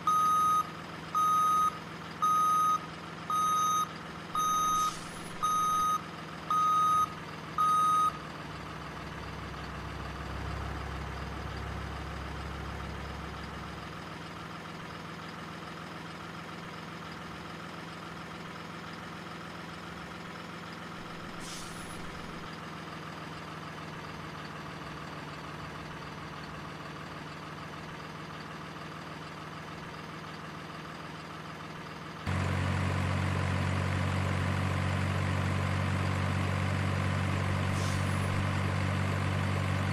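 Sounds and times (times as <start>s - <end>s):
reversing beeps: 0.0s - 8.2s
loud engine: 0.0s - 39.9s
steady engine hum: 0.0s - 39.9s.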